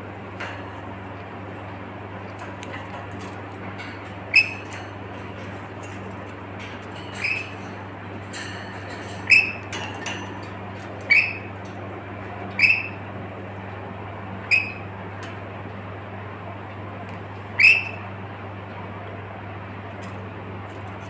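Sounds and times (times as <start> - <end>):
steady low hum: 0.0 - 21.0
parrot squeaky chirps: 4.3 - 4.6, 7.2 - 7.5, 9.3 - 9.6, 11.1 - 11.5, 12.6 - 13.0, 14.5 - 14.9, 17.6 - 18.0.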